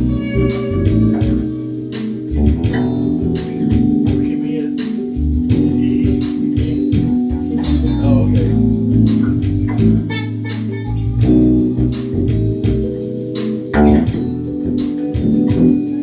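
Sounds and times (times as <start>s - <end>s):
electric bass line: 0.0s - 16.0s
percussion beat: 0.0s - 16.0s
sustained organ chords: 0.0s - 16.0s.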